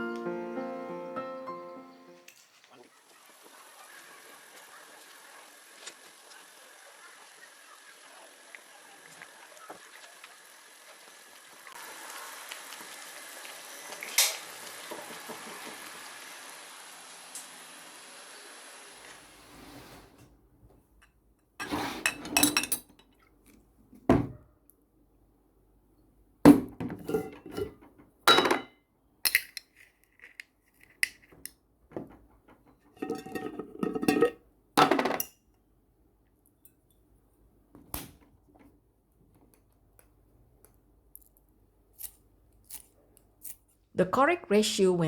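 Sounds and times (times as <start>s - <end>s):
dishes and utensils clattering: 21.6s - 23.2s, 26.8s - 28.7s, 32.8s - 35.4s.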